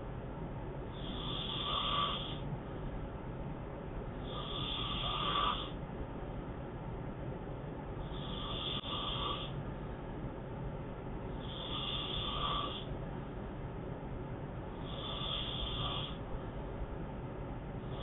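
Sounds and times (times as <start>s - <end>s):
man snoring: 0.9s - 2.4s, 4.2s - 5.8s, 8.0s - 9.6s, 11.4s - 12.9s, 14.8s - 16.2s.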